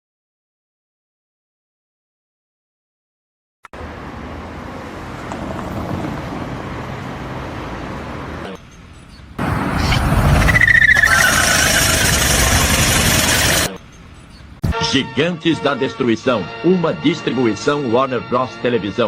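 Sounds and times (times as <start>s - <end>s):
engine noise: 3.8s - 14.6s.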